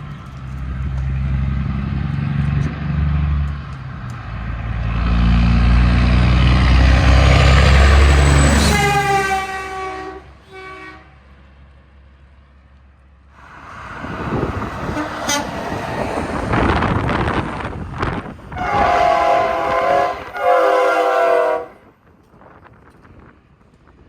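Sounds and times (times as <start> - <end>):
train passing: 0.0 - 24.0
train horn: 8.5 - 11.2, 14.9 - 15.6, 18.5 - 21.9.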